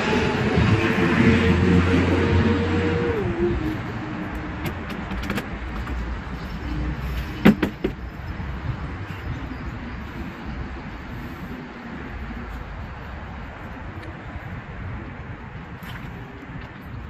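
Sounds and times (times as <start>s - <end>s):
low traffic rumble: 0.0s - 17.0s
sharp knocks: 7.4s - 8.0s.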